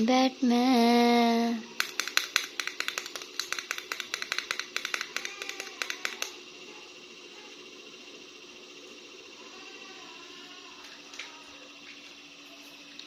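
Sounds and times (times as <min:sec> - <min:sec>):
plastic toy figures clicking: 0:01.8 - 0:06.4.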